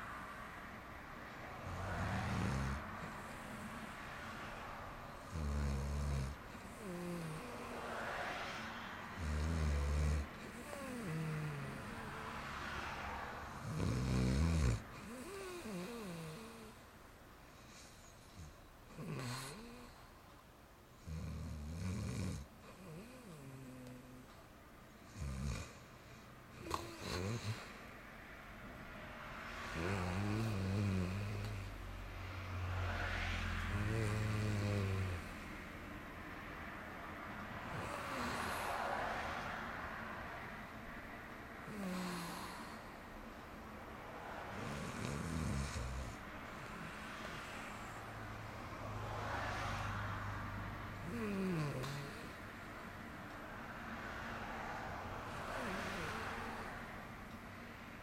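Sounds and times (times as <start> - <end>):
person snoring: 1.6 - 3.8, 5.2 - 8.0, 9.1 - 12.5, 13.5 - 16.8, 17.7 - 20.1, 21.0 - 24.2, 26.6 - 27.8, 29.6 - 31.7, 33.6 - 35.5, 37.7 - 39.6, 41.6 - 43.0, 44.5 - 48.1, 51.0 - 52.4, 55.3 - 56.8.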